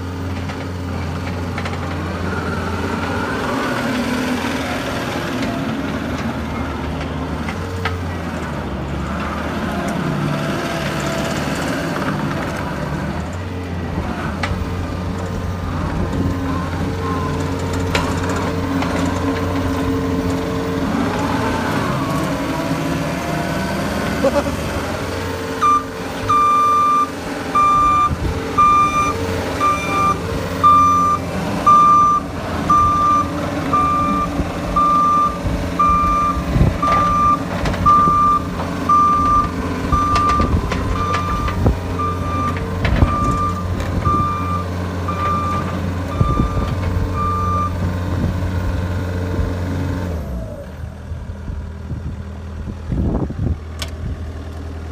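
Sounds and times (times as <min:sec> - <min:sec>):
diesel engine under load: 0:00.0 - 0:54.9
backup alarm beeping: 0:25.6 - 0:47.8.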